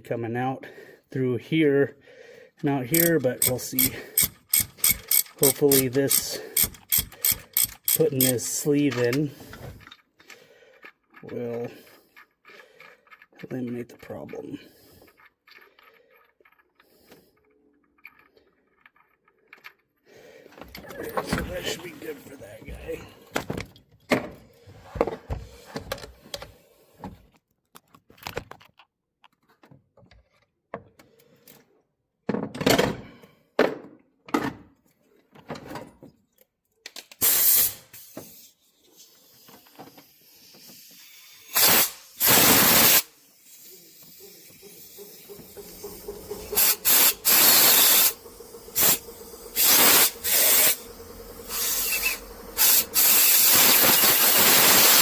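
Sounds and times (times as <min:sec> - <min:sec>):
aerosol spray blasts: 0:41.5 - 0:55.0
tools knocking on metal: 0:45.0 - 0:48.0.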